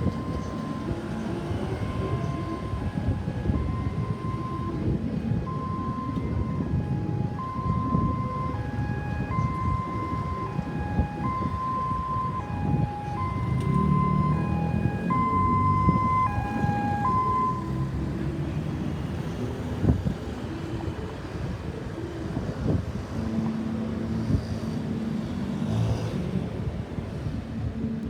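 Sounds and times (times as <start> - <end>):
ambulance siren two-tone wail: 0.0 - 18.2
traffic and engine rumble: 0.0 - 28.0.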